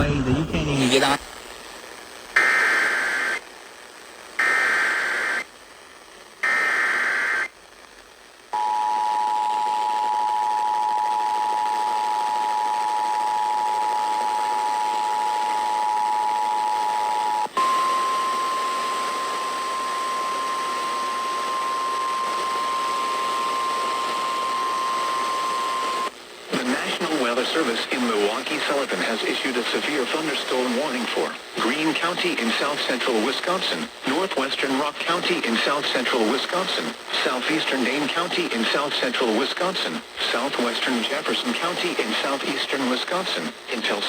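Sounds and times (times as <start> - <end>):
radio hiss: 0.0 - 8.5, 9.4 - 44.0.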